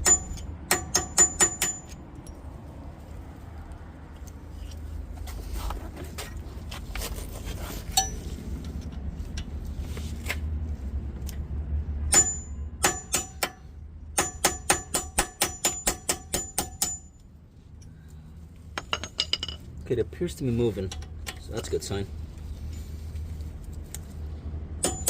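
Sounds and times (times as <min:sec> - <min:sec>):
hammer tapping metal punch: 0:00.0 - 0:02.0, 0:12.1 - 0:17.1, 0:24.8 - 0:25.0.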